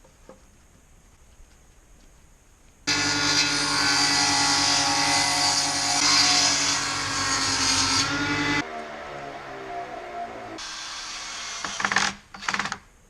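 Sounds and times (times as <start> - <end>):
quieter machine hum: 2.9 - 11.0
engine humming: 6.6 - 10.7.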